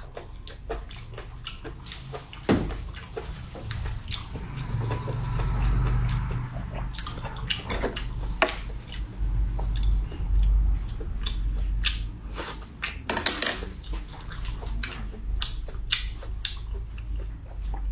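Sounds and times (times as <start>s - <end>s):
wet mouth sounds: 0.0s - 9.1s, 9.8s - 13.1s
low steady hum: 0.0s - 17.9s.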